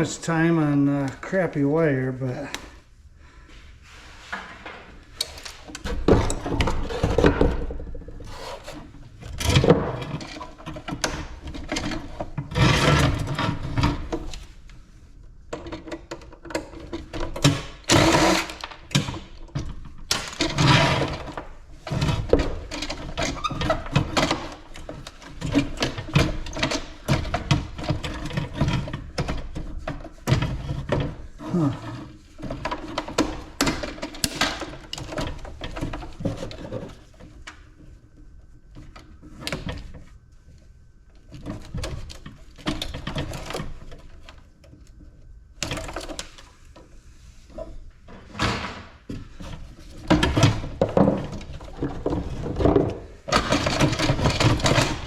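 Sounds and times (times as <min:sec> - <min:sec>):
metal and plastic parts clattering: 0:04.7 - 0:14.5, 0:15.5 - 0:37.4, 0:41.3 - 0:45.0, 0:45.6 - 0:46.5, 0:48.3 - 0:55.0.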